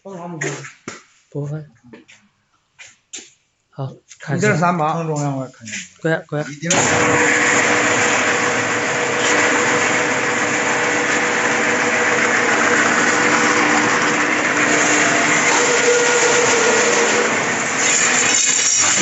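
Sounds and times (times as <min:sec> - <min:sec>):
cutting machine running: 0:06.7 - 0:19.0.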